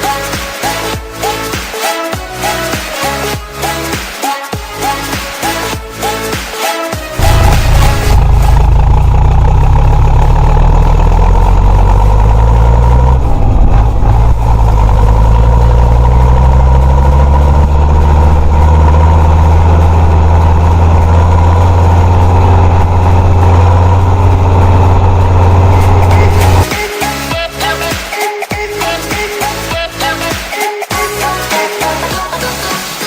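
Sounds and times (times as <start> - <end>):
tractor diesel engine running: 7.2 - 26.7.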